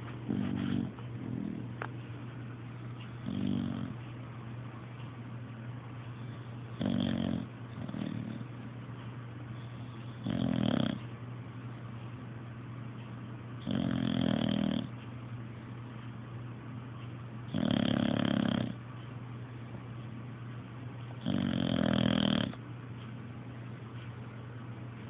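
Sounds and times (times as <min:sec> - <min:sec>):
steady low hum: 0:00.0 - 0:25.0
loud snoring: 0:00.3 - 0:01.7, 0:03.2 - 0:03.9, 0:06.8 - 0:08.4, 0:10.2 - 0:11.0, 0:13.6 - 0:14.9, 0:17.5 - 0:18.8, 0:21.2 - 0:22.6.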